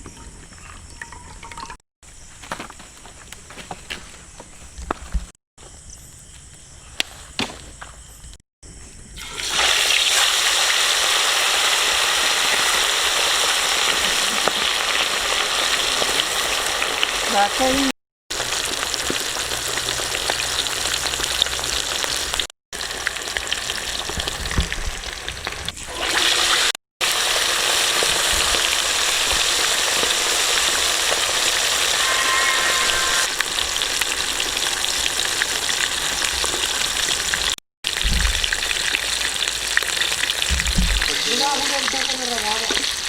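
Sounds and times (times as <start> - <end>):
deep-frying sizzling hiss: 9.2 - 43.0.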